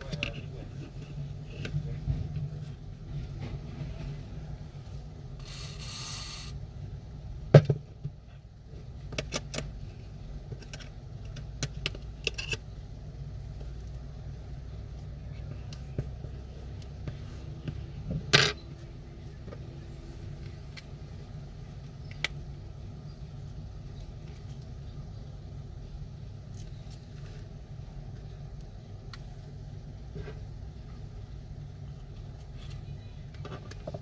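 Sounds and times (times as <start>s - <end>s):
steady low hum: 0.0s - 34.0s
tools and phone parts clicking: 10.6s - 12.6s.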